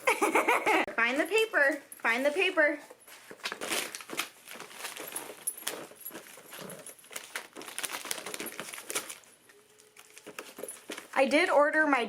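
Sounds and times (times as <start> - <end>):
wrapping paper crinkling and tearing: 3.1 - 11.2.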